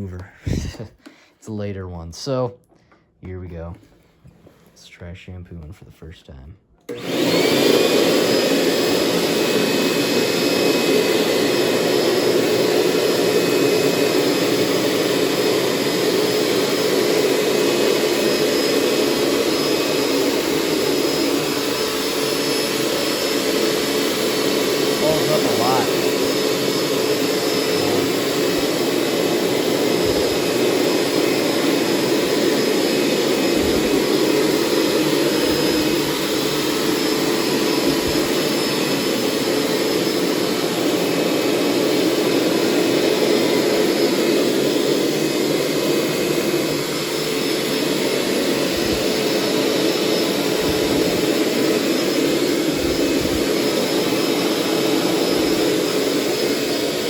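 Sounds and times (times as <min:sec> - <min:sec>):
carpet cleaner suction motor whine: 0:06.9 - 0:57.0.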